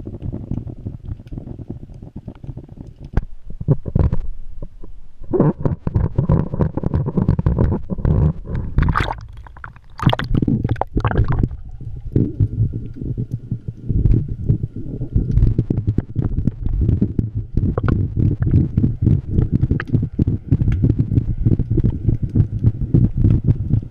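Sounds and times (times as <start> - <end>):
muffled underwater rumble: 0.0 - 23.9
sharp underwater clicks and knocks: 2.0 - 4.7, 5.4 - 11.6, 15.2 - 23.9.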